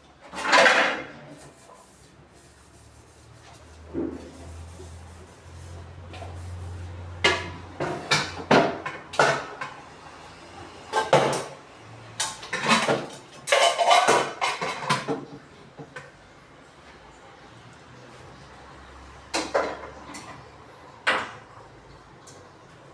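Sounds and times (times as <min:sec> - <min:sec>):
dishes and containers clattering: 0:00.2 - 0:01.5, 0:07.2 - 0:09.8, 0:10.9 - 0:11.6, 0:12.2 - 0:16.1, 0:19.3 - 0:20.4.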